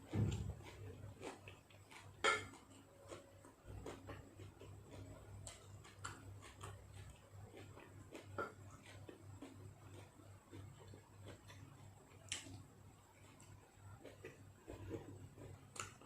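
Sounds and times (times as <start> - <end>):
steady low hum: 0.0 - 16.0
soft clicks of eating: 0.6 - 16.0
utensil clinking against a dish: 2.2 - 2.8.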